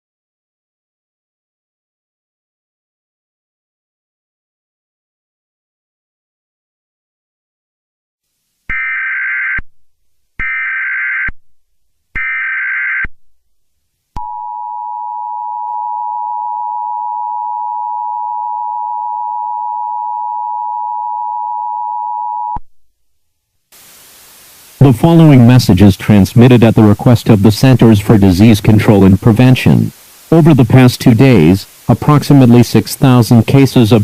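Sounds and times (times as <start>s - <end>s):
steady two-tone beep: 14.2s - 22.6s.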